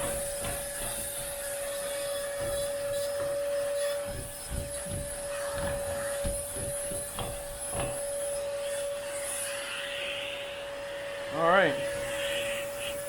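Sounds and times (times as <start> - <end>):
brush rubbing on upholstery: 0.0 - 10.4, 11.6 - 13.0
vacuum cleaner whining: 0.0 - 13.0.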